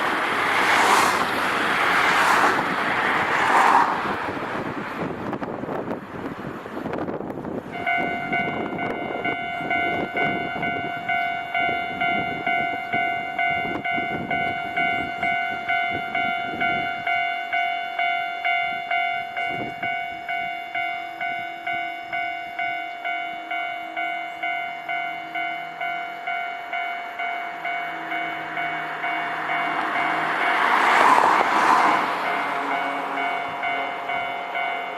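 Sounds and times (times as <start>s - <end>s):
level crossing warning bell: 0.0s - 3.4s, 7.6s - 34.9s
rushing noise: 0.0s - 11.4s, 26.7s - 34.9s.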